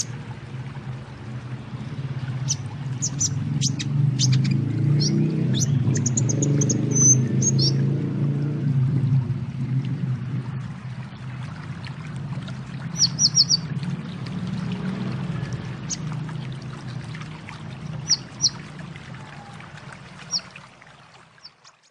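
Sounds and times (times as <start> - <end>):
bird chirping: 2.4 - 7.8, 13.0 - 13.6, 21.4 - 21.9.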